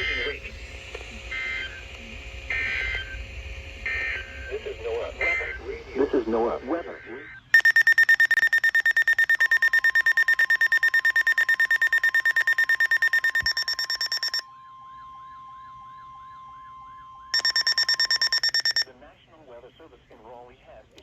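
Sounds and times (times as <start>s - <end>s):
steady single-pitch attention tone: 0.0s - 18.9s
alarm beeping rapidly: 1.2s - 14.5s, 17.3s - 18.9s.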